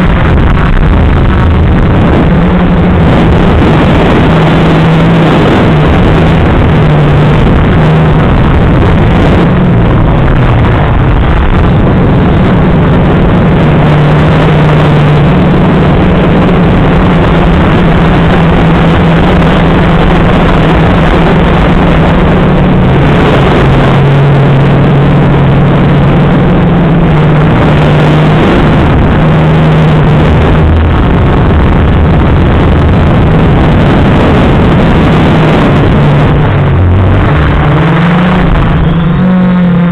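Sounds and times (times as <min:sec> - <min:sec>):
drone motors humming: 0:00.0 - 0:39.9.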